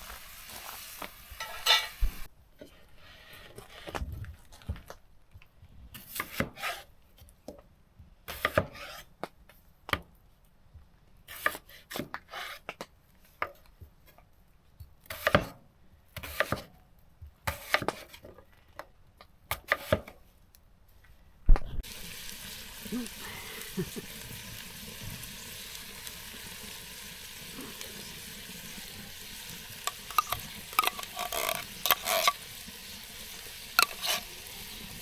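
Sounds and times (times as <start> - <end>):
knife chopping on cutting board: 16.2 - 16.7.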